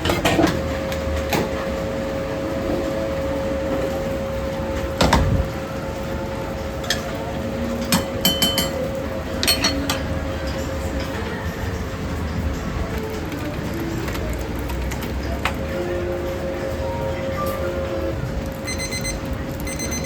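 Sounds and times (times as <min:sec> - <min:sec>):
kitchenware clinking: 0:07.8 - 0:10.6.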